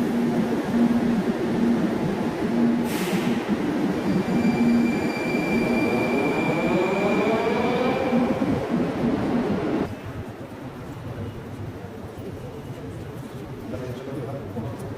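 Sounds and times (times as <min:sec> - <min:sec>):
train wheels rumbling on rails: 0:00.0 - 0:14.9
high wheel squeal: 0:04.0 - 0:07.4.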